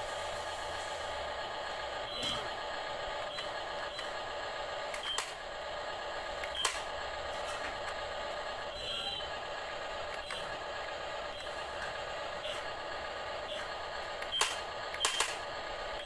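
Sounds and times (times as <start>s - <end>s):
small electric motors whining: 6.0s - 16.0s
sharp clicks: 6.4s - 6.9s, 14.2s - 15.4s.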